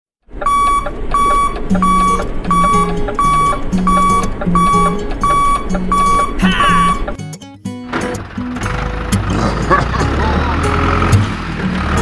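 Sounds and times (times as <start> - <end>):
short high beeping note: 0.5 - 7.2
electronic music: 5.7 - 7.6.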